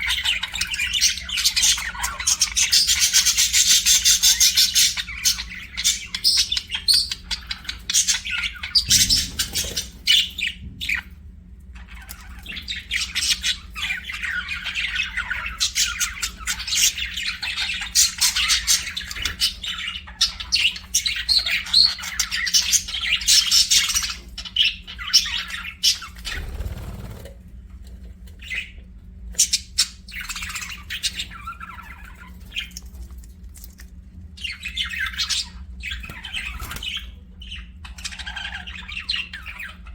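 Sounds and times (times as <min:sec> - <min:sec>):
budgerigars chirping: 0:00.0 - 0:11.1, 0:11.8 - 0:27.2, 0:28.4 - 0:32.8, 0:34.4 - 0:39.9
low steady hum: 0:00.0 - 0:39.9.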